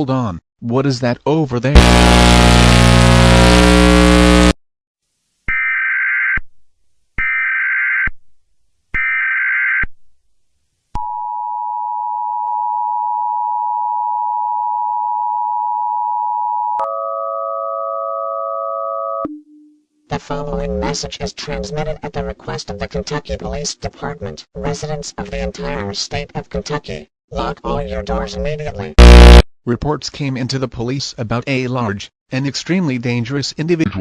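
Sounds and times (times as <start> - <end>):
harsh noise blast: 1.8 - 4.6, 29.0 - 29.4
screeching data bursts: 1.8 - 4.6
steady tone chord: 1.8 - 4.6
two-tone attention signal: 29.0 - 29.4.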